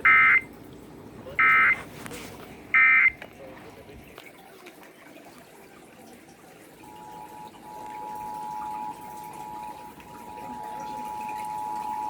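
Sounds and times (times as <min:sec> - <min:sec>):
two-tone alert signal: 0:00.0 - 0:00.5, 0:01.4 - 0:01.8, 0:06.9 - 0:12.0.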